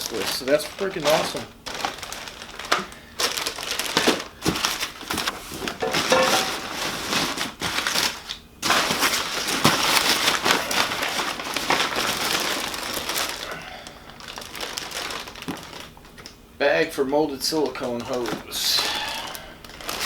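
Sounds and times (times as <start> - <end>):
plastic bags crinkling: 0.0 - 16.4, 17.1 - 20.0.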